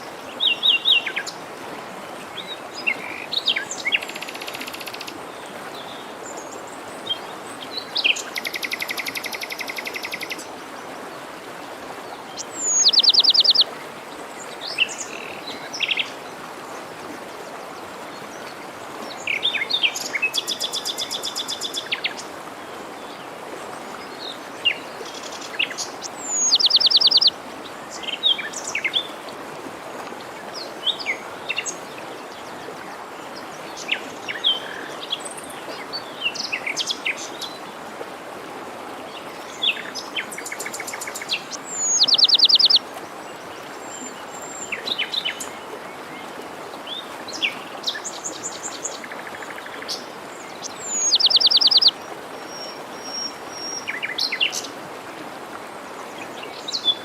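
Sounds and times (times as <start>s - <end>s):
forest stream rushing: 0.0s - 57.0s
songbirds singing trills: 12.3s - 13.7s, 25.5s - 27.3s, 39.5s - 42.8s, 46.9s - 54.7s
bird chirps: 12.6s - 13.6s, 26.2s - 27.3s, 41.7s - 42.8s, 50.8s - 51.9s.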